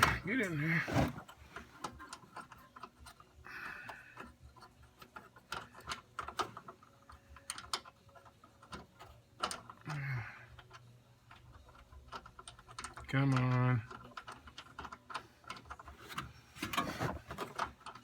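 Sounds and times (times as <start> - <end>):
clicks of metal parts and wrench: 3.9 - 18.0.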